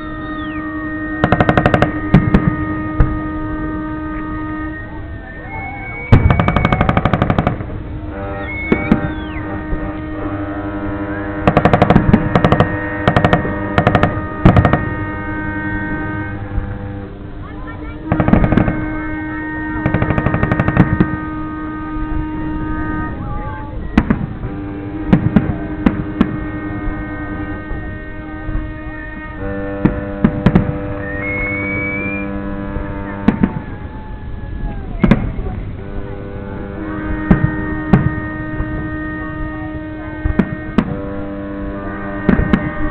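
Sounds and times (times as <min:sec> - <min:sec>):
fireworks cracking: 0:00.0 - 0:04.6, 0:05.7 - 0:42.9
steady held tones: 0:00.0 - 0:42.9
firework shells bursting with bangs: 0:01.2 - 0:03.4, 0:06.1 - 0:10.5, 0:11.2 - 0:17.0, 0:18.0 - 0:21.8, 0:29.4 - 0:32.2.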